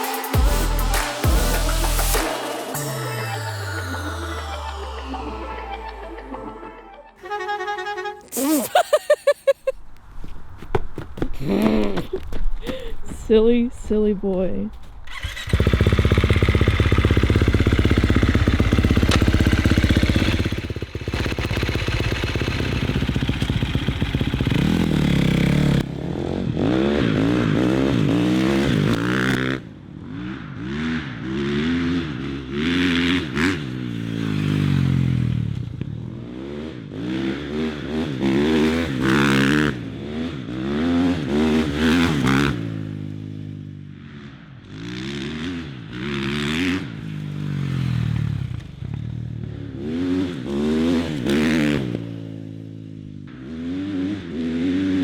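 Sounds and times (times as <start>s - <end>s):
dirt bike engine revving: 15.1s - 35.4s, 36.1s - 43.2s, 49.6s - 55.0s.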